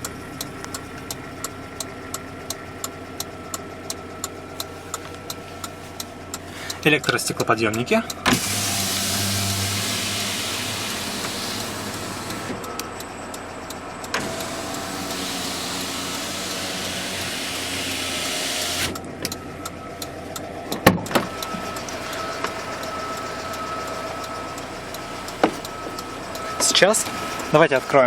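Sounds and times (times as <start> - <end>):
sharp clicks and knocks: 0.0 - 27.6
electric window motor running: 8.2 - 28.0.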